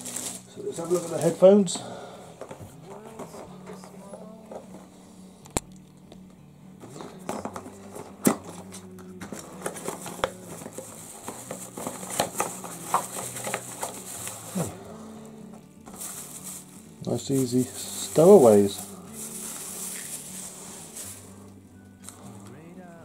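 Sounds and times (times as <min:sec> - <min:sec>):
plastic rustling and clicking: 0:00.0 - 0:01.4, 0:02.4 - 0:14.7.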